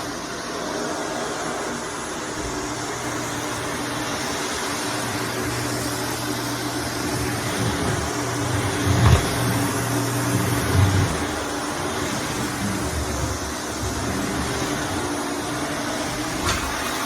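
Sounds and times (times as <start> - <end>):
vacuum cleaner running: 0.0 - 17.0.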